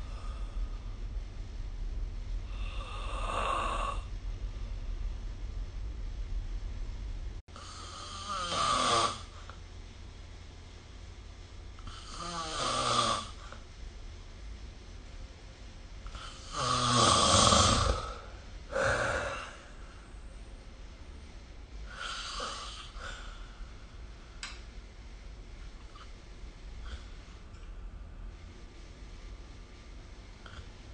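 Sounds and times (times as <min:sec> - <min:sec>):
person snoring: 0:02.4 - 0:04.1, 0:07.6 - 0:09.4, 0:11.8 - 0:13.5, 0:16.1 - 0:19.8, 0:21.9 - 0:23.4.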